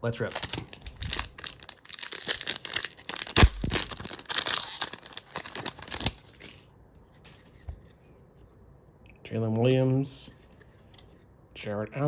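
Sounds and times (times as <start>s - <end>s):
foil wrapper ripping and crinkling: 0.2s - 6.6s.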